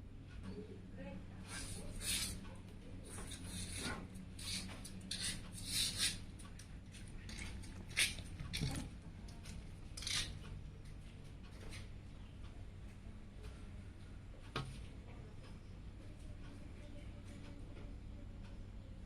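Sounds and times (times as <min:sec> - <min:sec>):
computer parts clicking and scraping: 0:01.6 - 0:02.5, 0:03.1 - 0:06.2, 0:09.5 - 0:10.5
faint low hum: 0:06.2 - 0:19.0.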